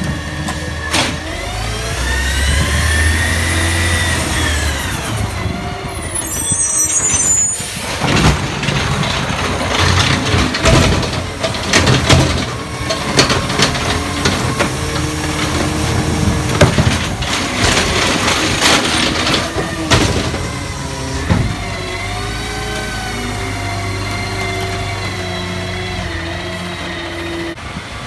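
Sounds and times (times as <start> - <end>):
truck engine running: 7.6 - 28.0
bangs and clanks: 7.7 - 25.2.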